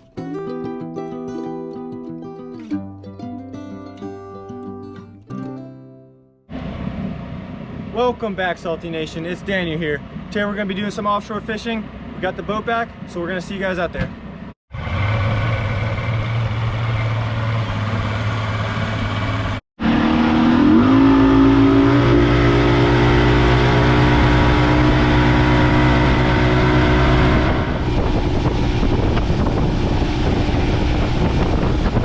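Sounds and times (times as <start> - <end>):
outboard boat motor: 14.8 - 32.0
rushing wind: 14.8 - 32.0.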